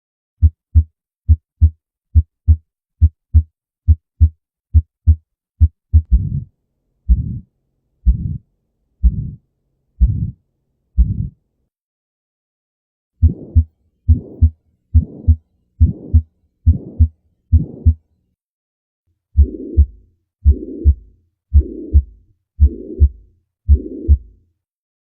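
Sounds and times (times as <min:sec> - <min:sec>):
lub-dub heartbeats: 0:00.4 - 0:06.5, 0:07.1 - 0:08.4, 0:09.0 - 0:09.4, 0:10.0 - 0:10.4, 0:11.0 - 0:11.4, 0:13.2 - 0:18.0, 0:19.4 - 0:24.4
whooshing heart murmur beats: 0:00.4 - 0:06.5, 0:07.1 - 0:07.5, 0:08.1 - 0:08.4, 0:09.0 - 0:09.4, 0:10.0 - 0:10.4, 0:11.0 - 0:11.4, 0:13.2 - 0:18.0, 0:19.4 - 0:24.4.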